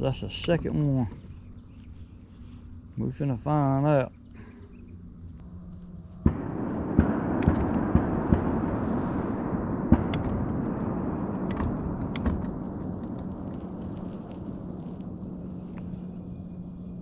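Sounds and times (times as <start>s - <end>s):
sharp shotgun cracks: 6.2s - 13.8s
shotgun fire rumbling: 6.2s - 15.4s.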